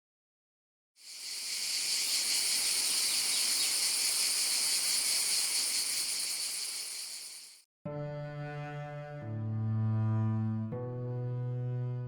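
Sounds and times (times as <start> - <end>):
insects buzzing: 1.0 - 7.6.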